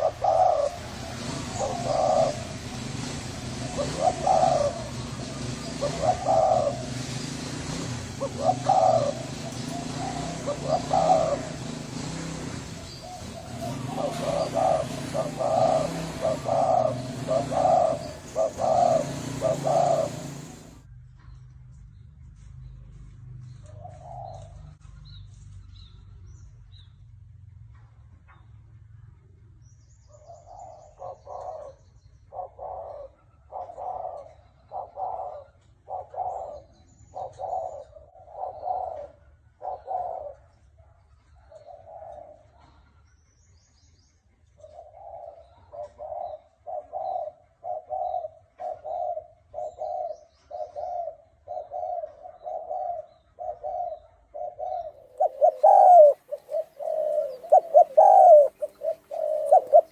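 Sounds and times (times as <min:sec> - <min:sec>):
dove cooing: 0:00.0 - 0:20.8, 0:23.8 - 0:24.7, 0:30.3 - 0:40.6, 0:41.4 - 0:42.8, 0:44.6 - 0:59.9.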